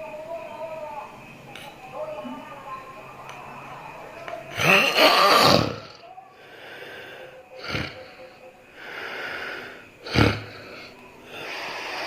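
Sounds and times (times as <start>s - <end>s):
person snoring harshly: 4.5s - 6.0s, 7.6s - 8.0s, 10.0s - 12.0s
soft breath: 6.3s - 7.5s, 8.2s - 12.0s.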